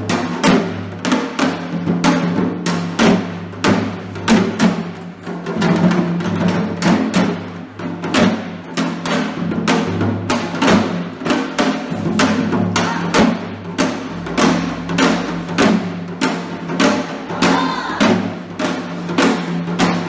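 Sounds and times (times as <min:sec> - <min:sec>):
music with steady drum beat: 0:00.0 - 0:20.0.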